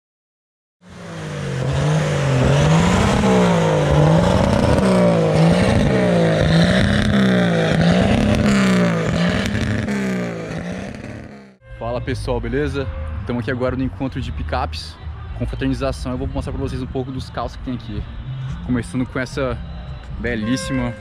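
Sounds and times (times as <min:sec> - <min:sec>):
pickup engine revving: 0:00.9 - 0:11.5.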